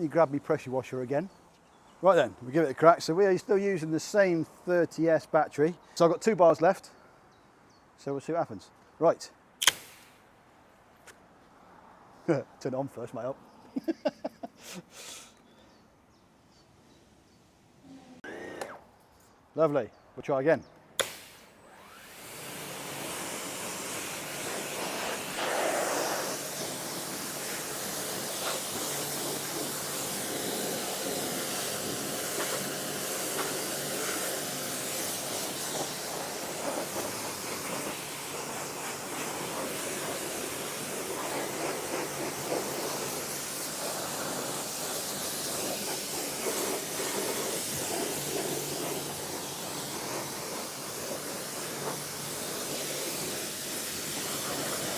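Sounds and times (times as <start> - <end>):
pressure washer spraying water: 9.6 - 10.2, 21.0 - 54.9
pump motor humming: 21.0 - 54.9.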